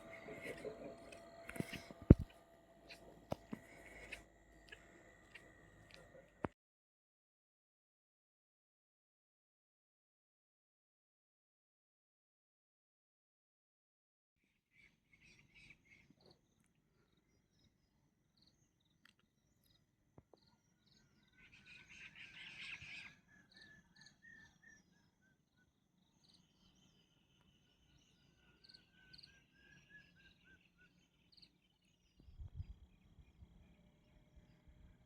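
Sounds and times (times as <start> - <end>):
rasping call: 0.0 - 6.4
insects chirping: 0.0 - 6.5
thin trilling calls: 0.0 - 6.5.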